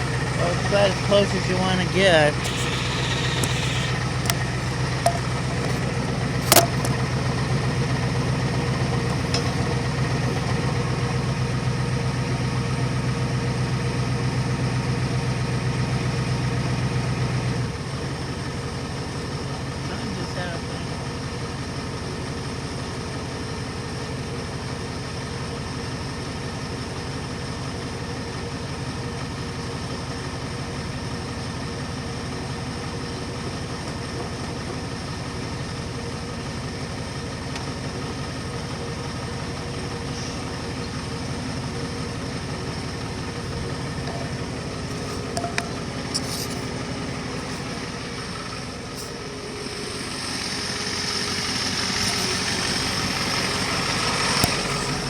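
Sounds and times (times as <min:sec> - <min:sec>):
truck engine idling with knock: 0:00.0 - 0:17.4, 0:32.3 - 0:55.0
person talking: 0:00.4 - 0:05.8.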